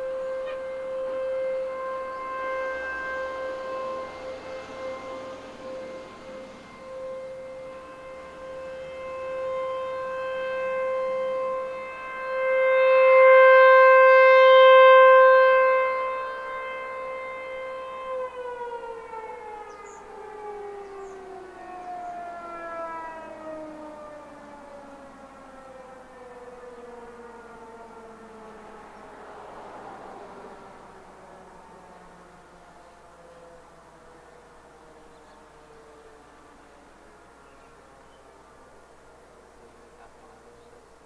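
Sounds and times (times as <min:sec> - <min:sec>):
warning siren steady tone: 0:00.0 - 0:41.0.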